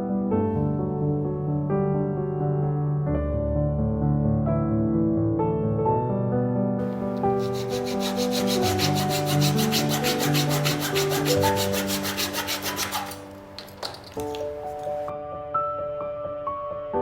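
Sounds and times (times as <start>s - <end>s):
soft piano music: 0.0s - 17.0s
sandpaper rubbing on wood: 6.8s - 13.3s.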